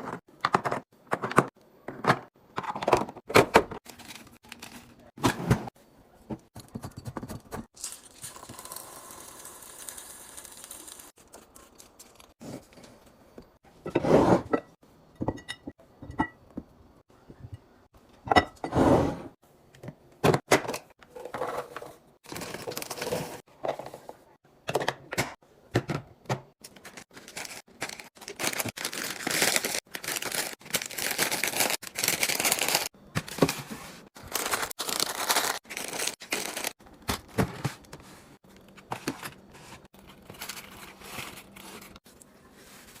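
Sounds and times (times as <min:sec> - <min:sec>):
packaging rustling and crinkling: 0:26.7 - 0:38.0
items being set down: 0:36.5 - 0:40.5.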